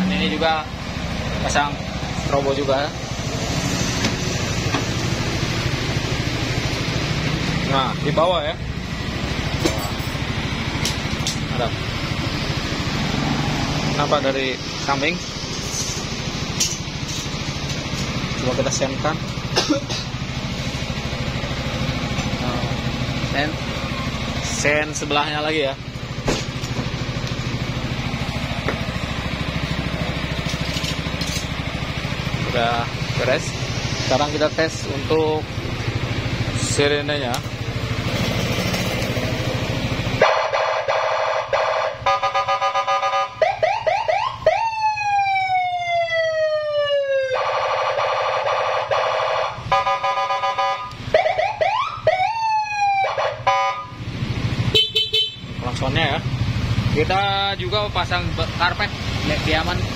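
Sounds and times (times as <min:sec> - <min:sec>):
scooter engine idling: 0:00.0 - 0:46.1, 0:48.8 - 0:59.9
electronic siren cycling tones: 0:40.2 - 0:54.0.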